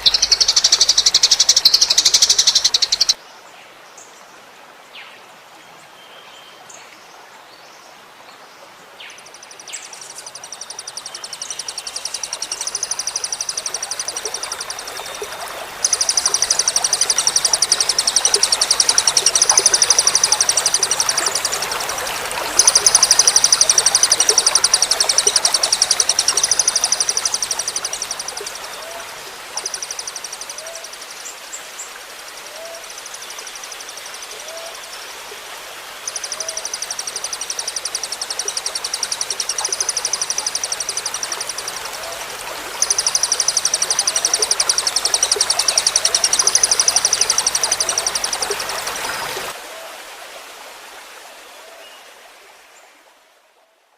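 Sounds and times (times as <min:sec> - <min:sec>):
songbird fast high trills: 0:00.0 - 0:03.2, 0:10.2 - 0:29.0
trickling water: 0:00.0 - 0:03.2, 0:09.2 - 0:53.1.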